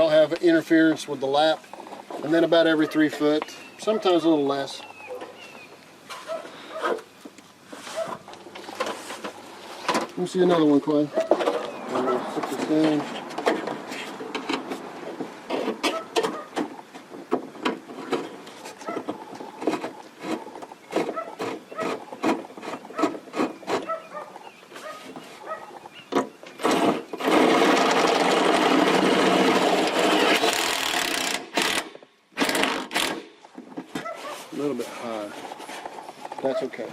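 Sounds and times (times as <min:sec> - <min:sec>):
power drill driving screw: 0:26.6 - 0:33.3.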